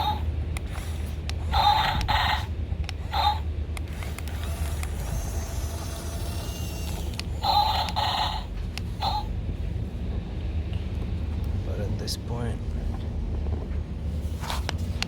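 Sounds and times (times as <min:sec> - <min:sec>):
toy motors whining: 0:00.0 - 0:09.3
low rumble: 0:00.0 - 0:15.0.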